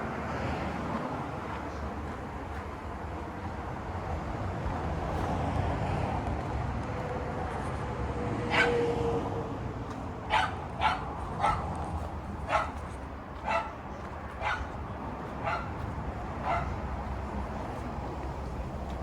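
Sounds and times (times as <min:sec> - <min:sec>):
dog barking: 0:08.5 - 0:08.9, 0:10.3 - 0:16.9
steady low rumble: 0:09.5 - 0:19.0.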